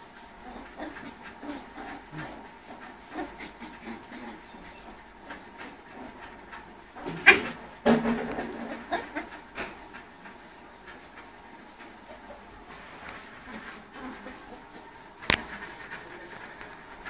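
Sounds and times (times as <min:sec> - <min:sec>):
puppies panting: 0:00.1 - 0:17.0
puppies making soft sounds: 0:00.4 - 0:07.6.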